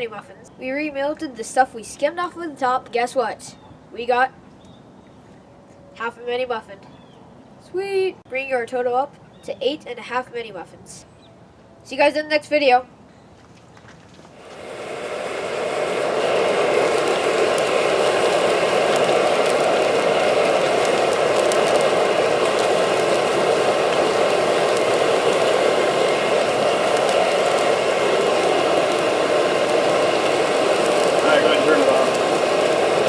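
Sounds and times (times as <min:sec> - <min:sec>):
furnace blower rushing: 0:14.4 - 0:33.0.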